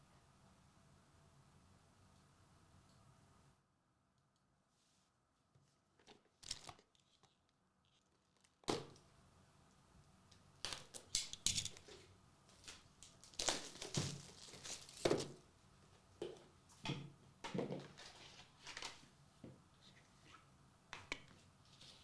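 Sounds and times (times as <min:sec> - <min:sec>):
wrapper tearing and crinkling: 0:12.7 - 0:15.0.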